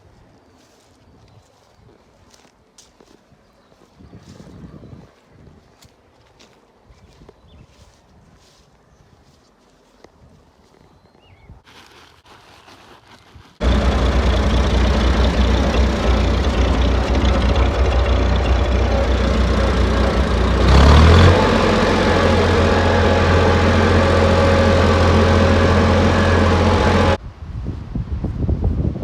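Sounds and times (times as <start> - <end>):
tractor engine running: 13.6 - 27.2.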